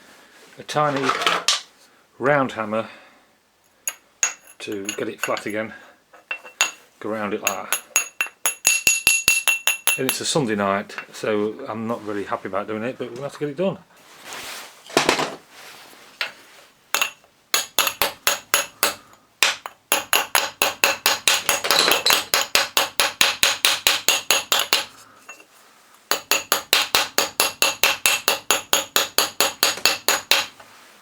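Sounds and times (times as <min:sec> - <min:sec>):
small hammer tapping metal: 0:03.9 - 0:05.6, 0:06.2 - 0:06.8, 0:07.4 - 0:10.3, 0:17.0 - 0:25.4, 0:26.1 - 0:30.6.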